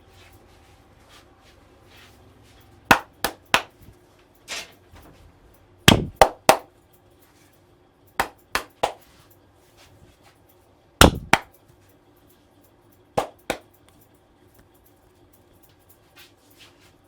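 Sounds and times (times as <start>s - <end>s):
hands slapping skin: 2.9s - 3.8s, 5.9s - 6.6s, 8.2s - 9.0s, 11.0s - 11.5s, 13.2s - 13.6s.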